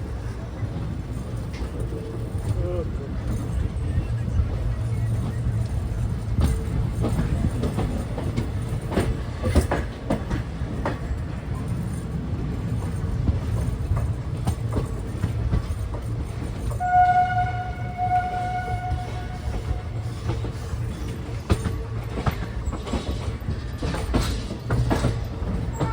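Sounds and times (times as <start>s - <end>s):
train rumbling: 0.0s - 25.9s
wheels clanking over rail joints: 0.7s - 25.9s
train horn: 16.8s - 20.4s.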